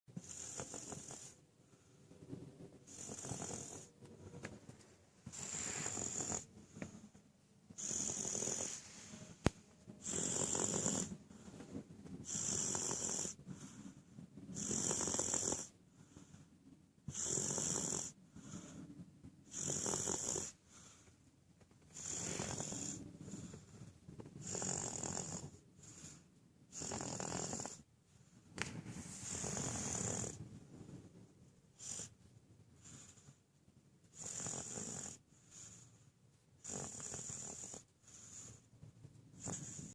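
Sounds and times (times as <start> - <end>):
baby snoring: 0.2 - 1.4, 2.9 - 3.9, 5.3 - 6.5, 7.8 - 9.0, 10.0 - 11.2, 12.2 - 13.4, 14.6 - 15.8, 17.1 - 18.2, 19.5 - 20.6, 22.0 - 23.5, 24.4 - 26.0, 26.7 - 27.8, 29.1 - 30.4, 34.2 - 35.2, 36.6 - 38.6, 39.4 - 39.9.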